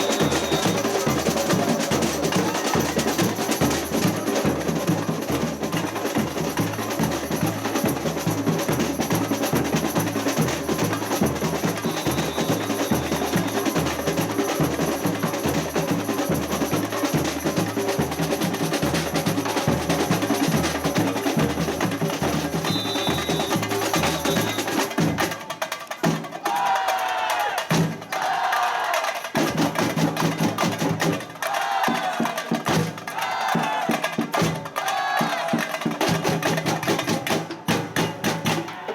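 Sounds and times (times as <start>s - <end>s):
high whistle tones: 0.0s - 1.6s, 11.6s - 13.8s, 22.6s - 24.9s
voices calling out: 0.0s - 6.2s, 11.2s - 14.6s, 19.4s - 24.9s
samba percussion ensemble: 0.0s - 38.9s.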